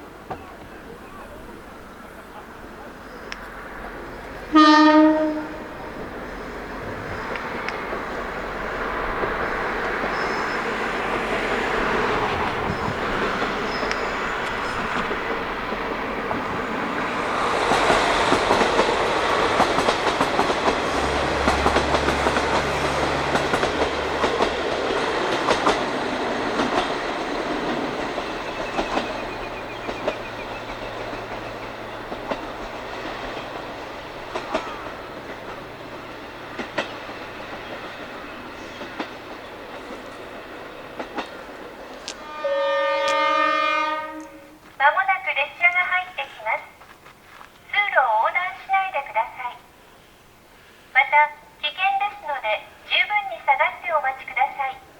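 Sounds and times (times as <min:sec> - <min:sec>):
train wheels clacking over rail joints: 0:17.5 - 0:42.2.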